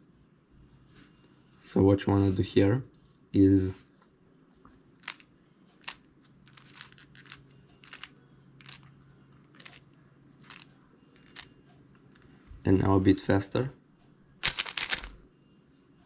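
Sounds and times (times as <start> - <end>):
plastic puzzle cube clicks: 5.8 - 8.9, 9.5 - 9.8, 10.4 - 10.6, 11.2 - 11.5, 14.4 - 15.2.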